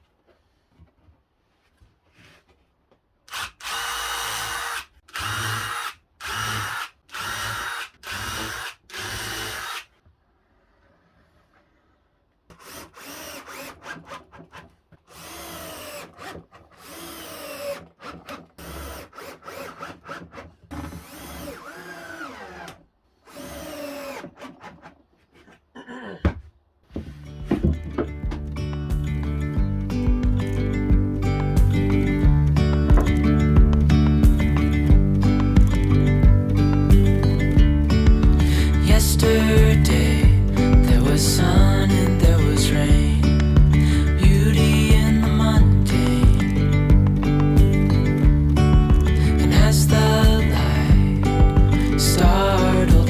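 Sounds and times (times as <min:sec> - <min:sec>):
drill driving screws into wood: 0:03.3 - 0:10.0, 0:12.5 - 0:25.5.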